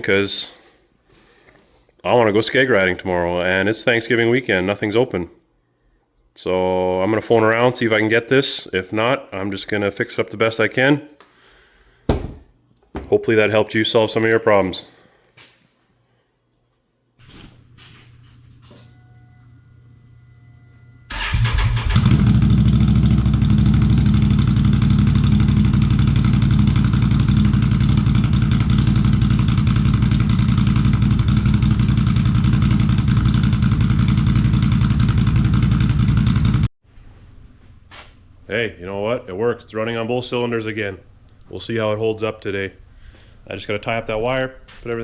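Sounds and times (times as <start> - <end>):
faint hum with steady tones: 18.0 - 21.1
engine starting and running: 21.1 - 36.7.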